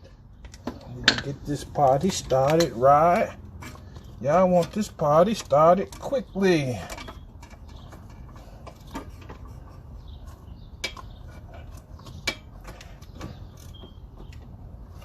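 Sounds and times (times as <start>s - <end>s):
metal tools clicking and clinking: 0.4s - 9.8s.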